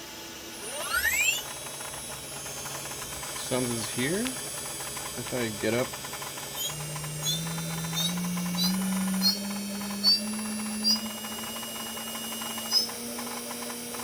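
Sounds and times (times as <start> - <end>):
spindle motor whine: 0.0 - 14.0.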